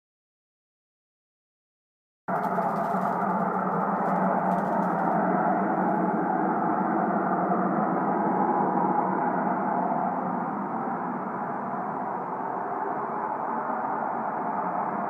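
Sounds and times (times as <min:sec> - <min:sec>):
faint crackles: 0:02.3 - 0:05.2
loud multi-tone drone: 0:02.3 - 0:15.0.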